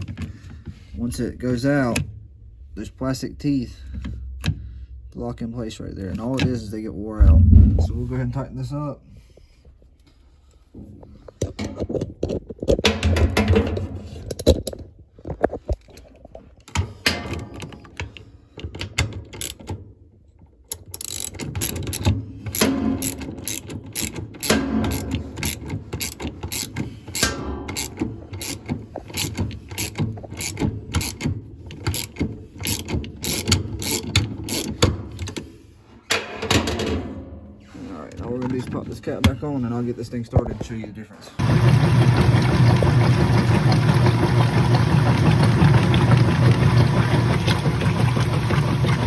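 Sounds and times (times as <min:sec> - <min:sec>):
ratchet wrench clicking: 0:21.0 - 0:21.7, 0:23.0 - 0:24.2.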